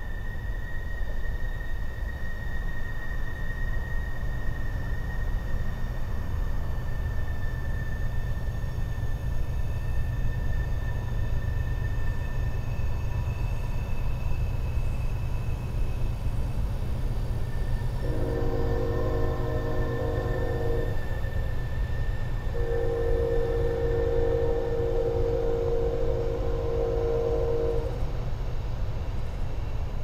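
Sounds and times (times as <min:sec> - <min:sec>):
train rumbling with echo: 0:00.0 - 0:30.0
thin high whine: 0:18.0 - 0:28.1.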